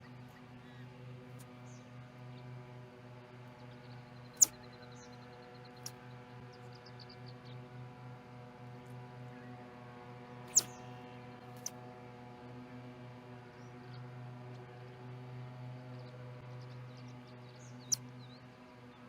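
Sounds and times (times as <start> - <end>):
faint high chirps: 10.5 - 10.8.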